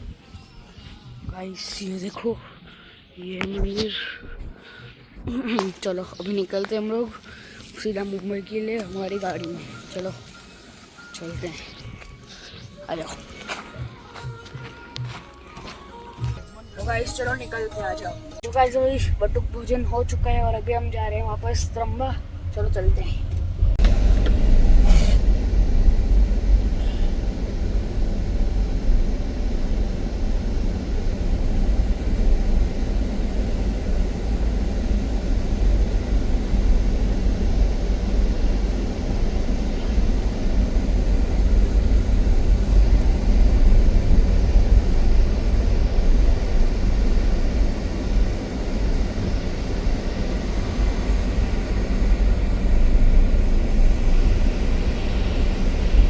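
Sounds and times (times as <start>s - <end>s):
car engine and road noise: 14.9s - 56.0s.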